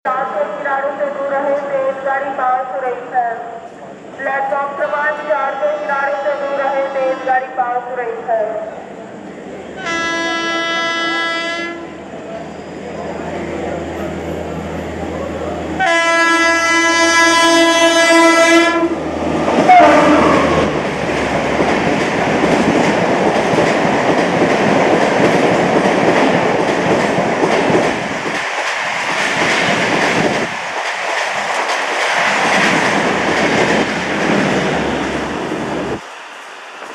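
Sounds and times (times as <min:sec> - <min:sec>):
train coaches rushing past: 0:00.1 - 0:36.9
locomotive horn blast: 0:09.8 - 0:12.0, 0:15.8 - 0:19.0, 0:19.7 - 0:20.6.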